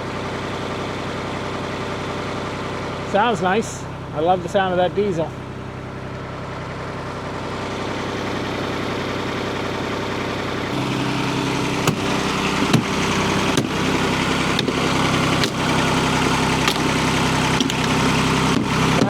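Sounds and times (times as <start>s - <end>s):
diesel engine idling: 0.0s - 19.0s
sharp clicks: 10.8s - 19.0s.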